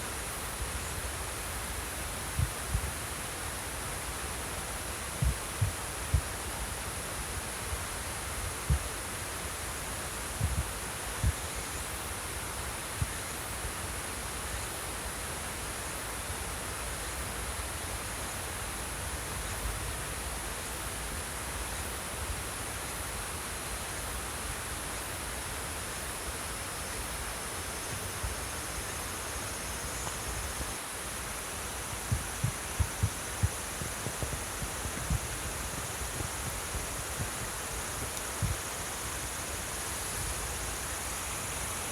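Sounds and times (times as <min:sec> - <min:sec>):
insects trilling: 0:25.9 - 0:41.9
water flowing: 0:31.3 - 0:40.9.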